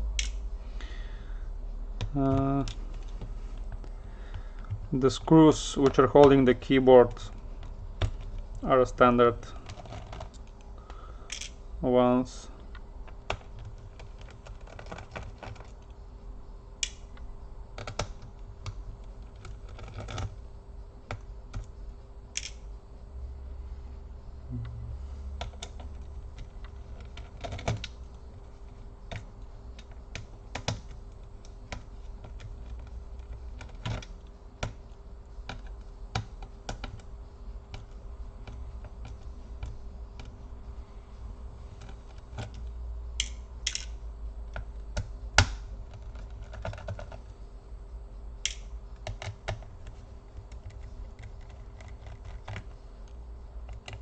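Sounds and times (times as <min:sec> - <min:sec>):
small screws and plastic parts handled: 0:09.3 - 0:10.7, 0:12.7 - 0:16.0, 0:18.6 - 0:20.3.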